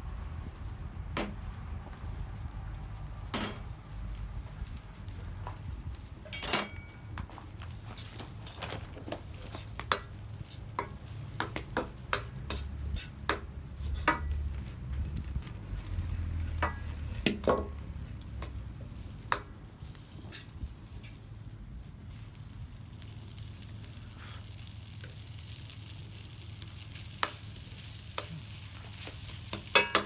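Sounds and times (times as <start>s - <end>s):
low sizzle: 0.0s - 30.0s
utensil scraping a pan: 12.5s - 13.2s.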